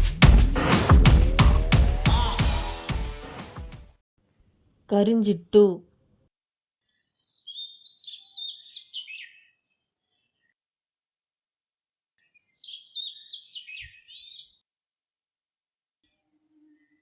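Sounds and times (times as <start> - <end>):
robin singing: 7.0 - 9.6, 12.3 - 14.6.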